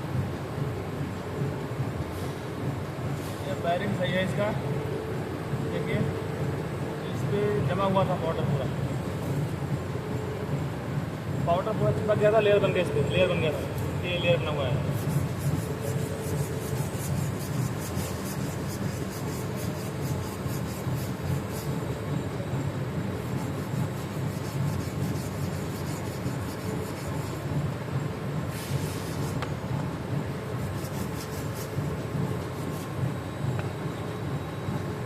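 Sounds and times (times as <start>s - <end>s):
steady low hum: 0.0s - 35.0s
scraping strokes on caked powder: 12.8s - 27.8s, 28.4s - 29.5s, 30.3s - 33.2s.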